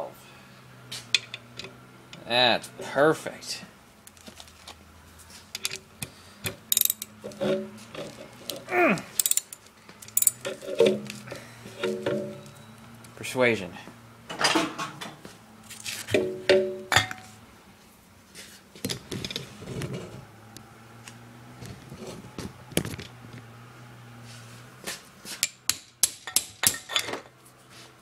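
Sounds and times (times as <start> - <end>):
ratchet wrench clicking: 6.7 - 7.2, 9.2 - 10.4
metal tools clinking: 6.7 - 12.8, 26.2 - 27.3.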